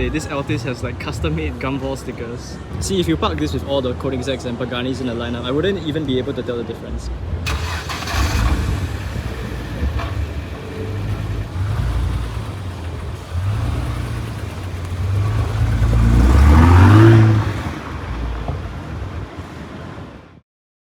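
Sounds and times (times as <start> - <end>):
car engine revving: 7.5 - 19.2.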